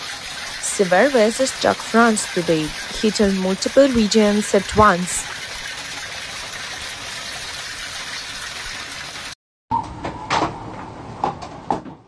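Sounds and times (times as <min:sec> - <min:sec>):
storm water rushing: 0:00.0 - 0:09.4.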